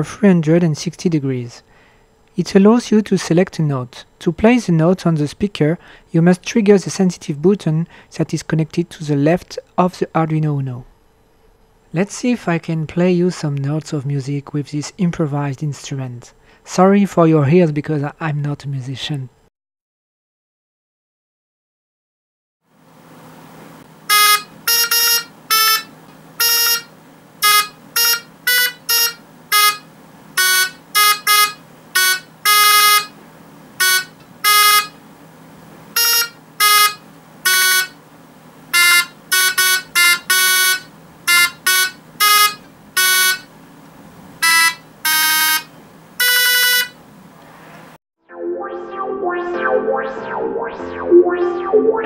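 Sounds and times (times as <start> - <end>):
faint steady hum: 0.0 - 19.5, 22.8 - 47.8
buzzy electronic beeps: 48.3 - 52.0.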